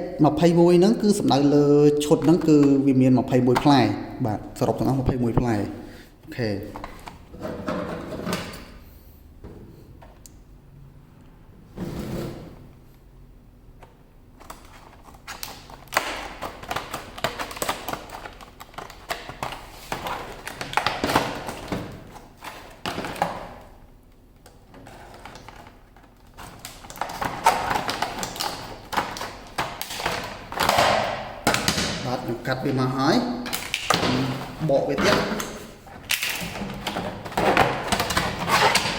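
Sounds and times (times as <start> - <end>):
packaging tearing and rustling: 14.4 - 23.6, 24.8 - 32.1, 33.5 - 38.9.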